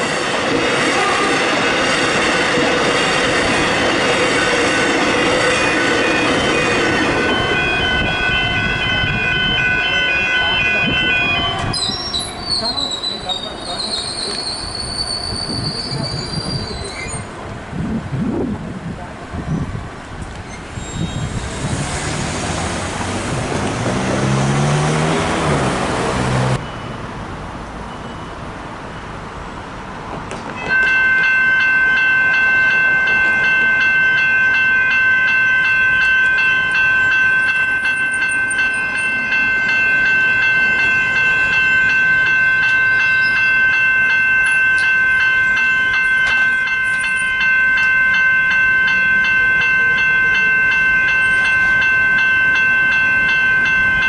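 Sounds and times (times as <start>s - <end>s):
electric train passing: 0.0s - 19.0s, 19.7s - 54.0s
level crossing bells ringing: 1.5s - 15.0s, 30.6s - 54.0s.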